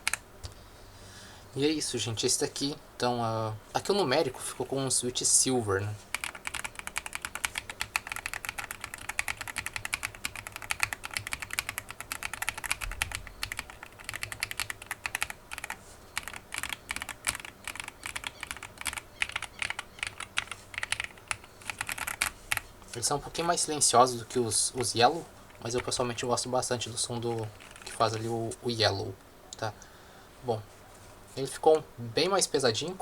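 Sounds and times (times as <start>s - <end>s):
fast mechanical keyboard typing: 0.0s - 0.2s, 6.1s - 23.1s, 24.8s - 26.2s, 27.2s - 28.0s.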